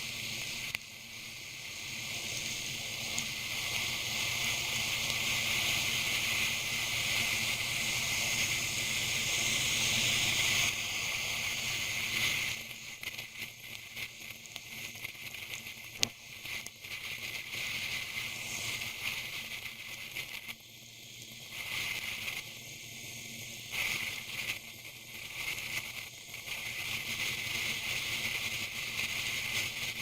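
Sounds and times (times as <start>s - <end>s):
crackling rain patter: 0.3s - 20.6s.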